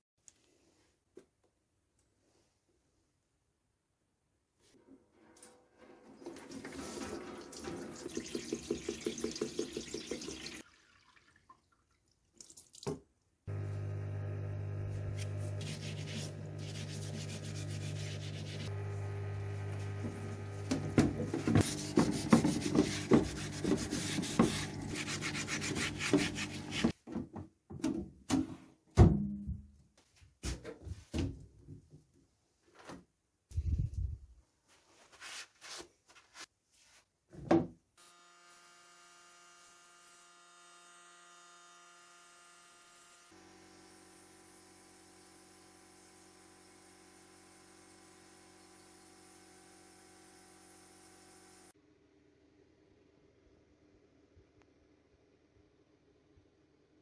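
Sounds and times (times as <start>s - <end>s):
electric motor hum: 13.5s - 26.9s, 38.0s - 51.7s.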